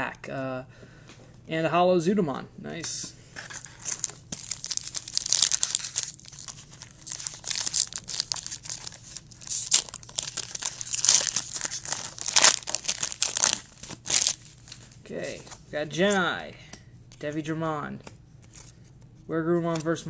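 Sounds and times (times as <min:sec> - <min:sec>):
card pack wrapper crinkling: 0:03.5 - 0:15.5.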